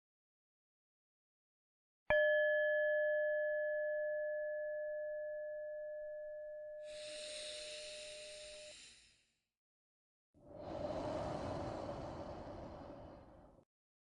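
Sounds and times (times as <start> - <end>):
long slow breath out: 6.9 - 9.4, 10.4 - 13.7.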